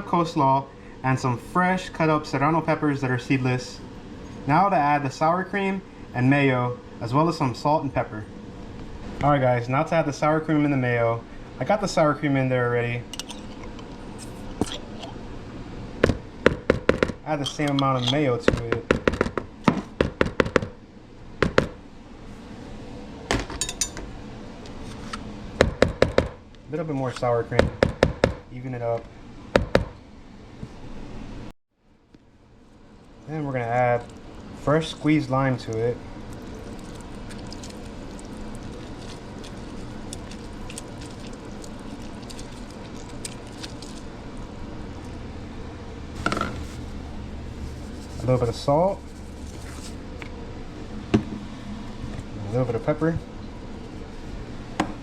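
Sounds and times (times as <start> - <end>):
utensil knocking against bowl: 46.2 - 46.8.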